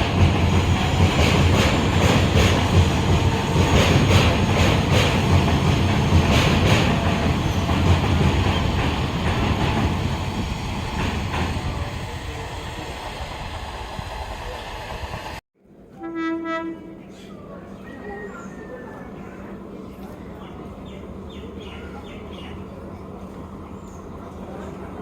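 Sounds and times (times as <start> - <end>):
train rumbling past: 0.0 - 25.0
train horn: 15.9 - 17.2.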